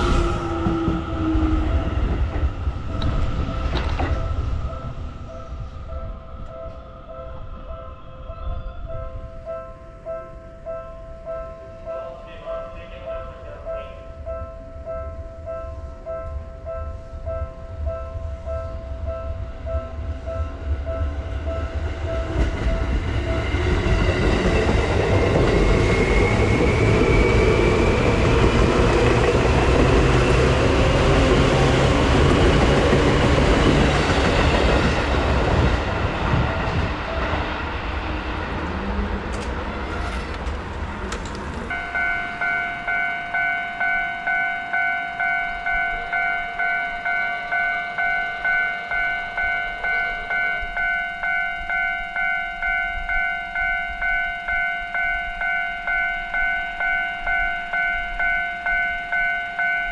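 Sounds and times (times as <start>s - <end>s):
train wheels rumbling: 0.0s - 10.6s, 15.3s - 59.9s
level crossing warning bell: 0.0s - 37.6s, 41.7s - 59.9s
bright crossing bell ringing: 41.7s - 59.9s
high whine: 41.7s - 59.9s.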